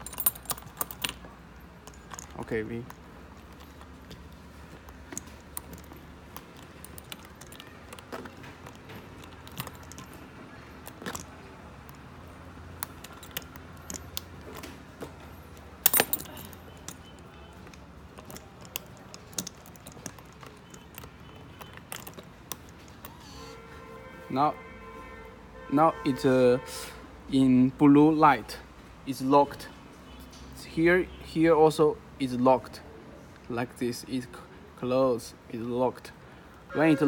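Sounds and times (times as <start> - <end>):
suitcase lock clicking and rattling: 0.0 - 23.6.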